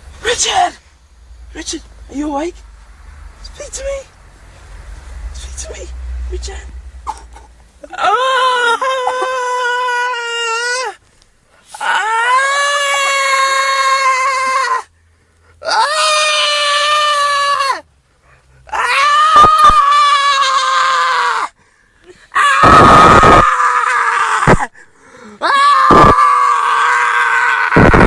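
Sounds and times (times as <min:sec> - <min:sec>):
person screaming and wailing: 0:07.8 - 0:11.0, 0:11.7 - 0:14.9, 0:15.6 - 0:17.8, 0:18.7 - 0:21.5, 0:22.1 - 0:28.0.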